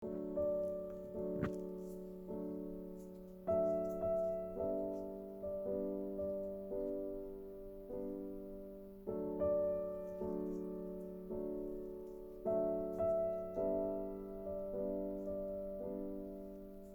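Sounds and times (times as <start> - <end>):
slow piano chords: 0.0 - 16.9.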